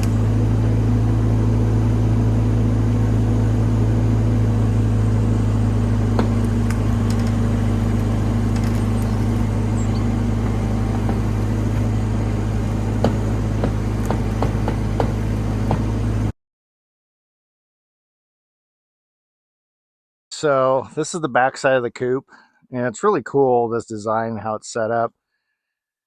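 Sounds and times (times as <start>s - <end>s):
diesel engine running: 0.0s - 16.3s.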